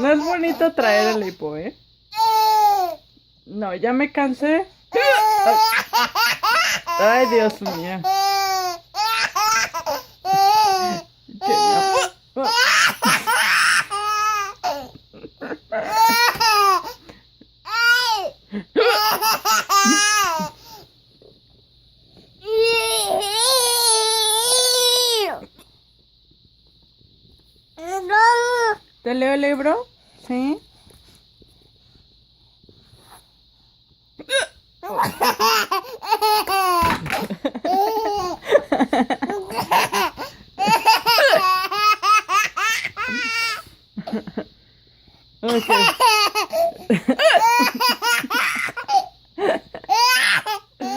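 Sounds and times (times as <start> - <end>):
baby laughing: 5.0 - 14.9, 15.8 - 17.0, 17.7 - 20.8, 34.3 - 38.5, 39.2 - 43.6, 45.5 - 49.1, 49.8 - 50.9.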